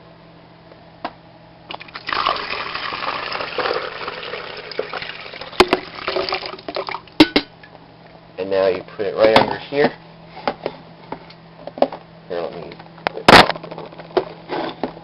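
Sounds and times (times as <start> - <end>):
water pouring into coffee maker: 1.7 - 7.1.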